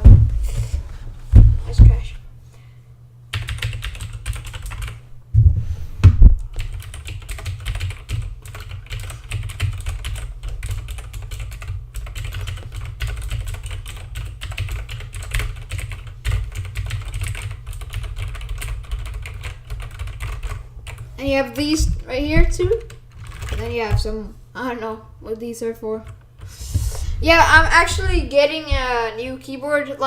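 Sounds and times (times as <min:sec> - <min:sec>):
mechanical keyboard typing: 0:03.3 - 0:05.0, 0:06.6 - 0:21.0, 0:22.5 - 0:24.0.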